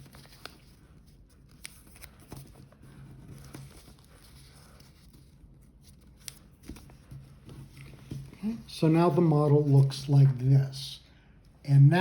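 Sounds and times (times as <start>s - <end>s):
paper being folded and creased: 0.0s - 8.8s.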